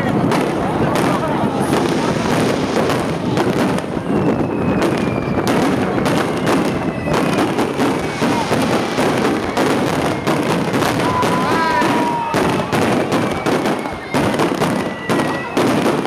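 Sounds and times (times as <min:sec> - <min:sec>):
fireworks bangs and crackles: 0:00.0 - 0:16.0
faint high whistles: 0:04.0 - 0:05.8.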